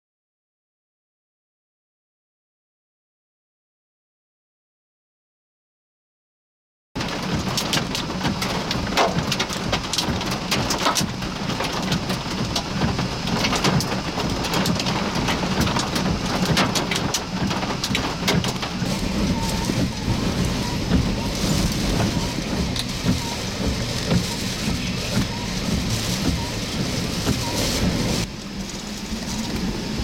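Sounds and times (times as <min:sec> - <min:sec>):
heavy rain pelting a vehicle: 0:07.0 - 0:30.0
low steady rumble: 0:07.0 - 0:30.0.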